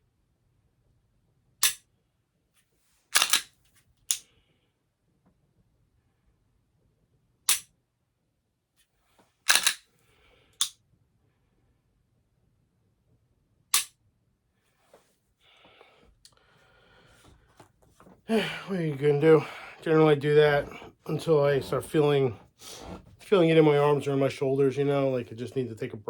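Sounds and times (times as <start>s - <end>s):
pistol slide racking clicks: 3.2s - 3.5s, 7.5s - 7.7s, 9.5s - 9.8s, 13.7s - 13.9s
pistol striker click: 3.2s - 3.5s, 7.5s - 7.7s, 9.5s - 9.8s, 13.7s - 14.0s.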